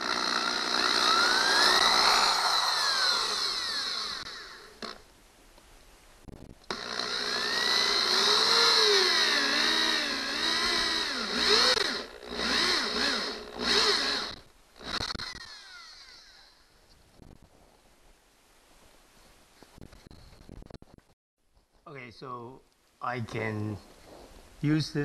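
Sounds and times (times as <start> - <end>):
power drill boring through drywall: 0.0 - 5.0, 6.7 - 16.6.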